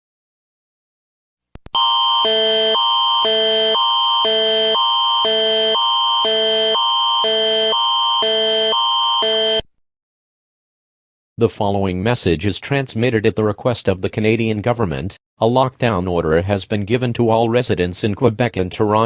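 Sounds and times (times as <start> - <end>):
alert tone alternating chord: 1.8 - 9.7.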